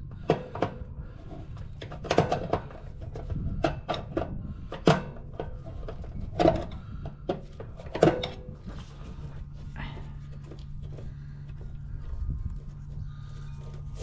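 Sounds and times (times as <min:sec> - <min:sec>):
metal parts being handled: 0:00.2 - 0:09.6.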